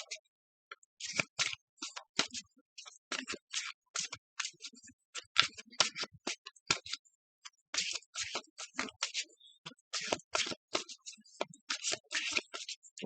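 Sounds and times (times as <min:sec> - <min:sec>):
cards being shuffled: 0:01.1 - 0:01.6, 0:10.0 - 0:10.9, 0:11.7 - 0:12.5.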